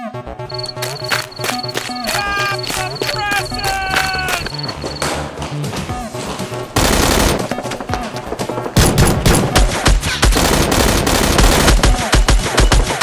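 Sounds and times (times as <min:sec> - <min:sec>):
rapid automatic gunfire: 0:08.8 - 0:12.2.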